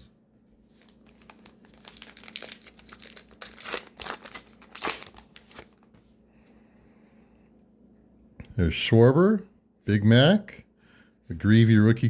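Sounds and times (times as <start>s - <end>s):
foil wrapper crinkling and tearing: 0.7s - 6.0s.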